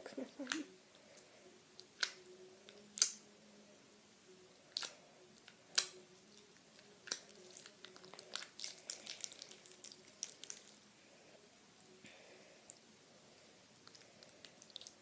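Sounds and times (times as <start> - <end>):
sticky slime crackles: 4.7 - 10.9, 13.8 - 15.0
slime squelching by hand: 6.8 - 10.8, 13.8 - 15.0.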